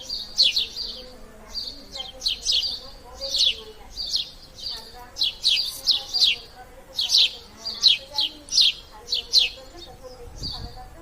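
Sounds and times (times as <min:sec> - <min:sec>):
sparrow chirping: 0:00.0 - 0:11.0.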